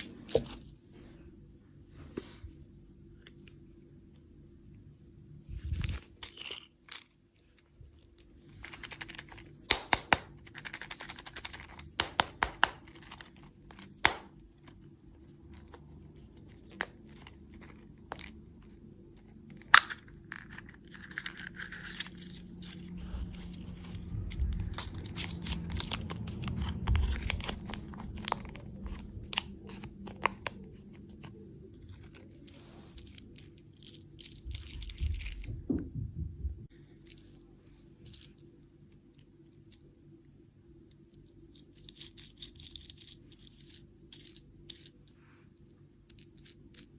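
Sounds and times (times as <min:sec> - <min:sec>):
candy wrapper crinkling: 0:05.5 - 0:07.2, 0:08.1 - 0:14.8, 0:15.4 - 0:35.5, 0:41.5 - 0:45.0.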